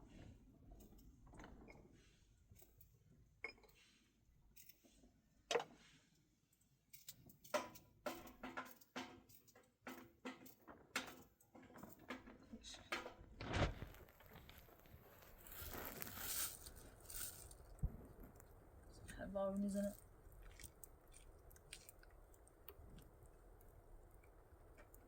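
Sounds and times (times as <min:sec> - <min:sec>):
knocks and clatter of handling: 0:06.9 - 0:16.2.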